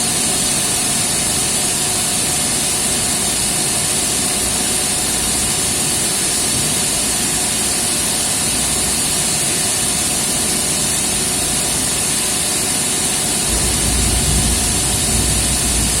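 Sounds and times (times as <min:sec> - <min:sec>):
electric motor humming: 0:04.4 - 0:16.0.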